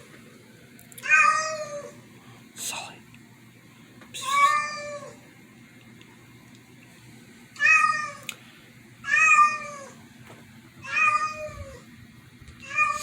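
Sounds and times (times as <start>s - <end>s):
low steady hum: 0.0s - 13.0s
cat meowing: 1.0s - 2.0s, 4.2s - 5.2s, 7.6s - 8.3s, 9.0s - 10.0s, 10.8s - 11.8s, 12.6s - 13.0s.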